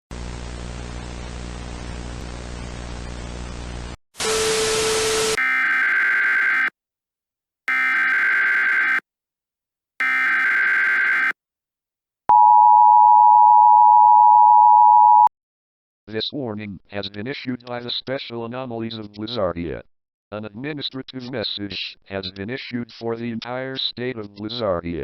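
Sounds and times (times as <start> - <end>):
two-tone attention signal: 12.3 - 15.3.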